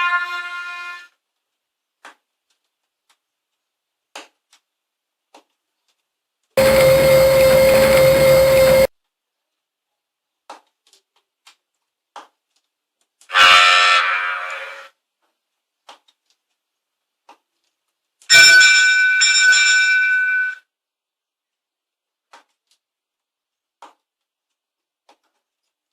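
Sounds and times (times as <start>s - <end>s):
ship horn blasts: 6.6s - 8.9s.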